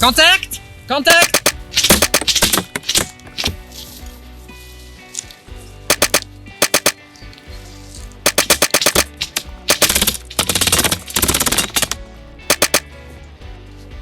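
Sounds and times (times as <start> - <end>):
background music: 0.0 - 14.0
airsoft guns firing: 1.1 - 3.6, 5.9 - 7.0, 8.3 - 12.9.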